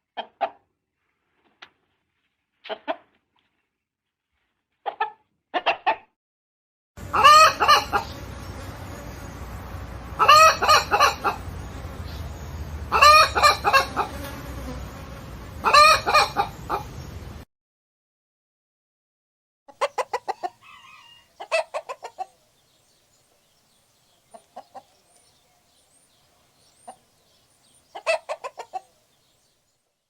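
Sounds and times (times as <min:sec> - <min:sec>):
chicken clucking and calling: 0:00.0 - 0:00.7, 0:02.6 - 0:03.2, 0:04.8 - 0:06.1, 0:07.0 - 0:08.5, 0:10.1 - 0:14.2, 0:15.6 - 0:17.1, 0:19.7 - 0:22.8, 0:23.7 - 0:29.4.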